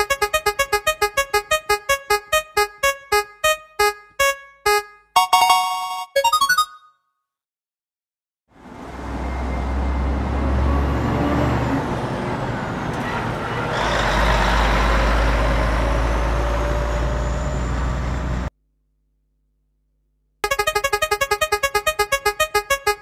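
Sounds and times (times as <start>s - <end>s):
heavy truck engine rumble: 8.6s - 18.5s.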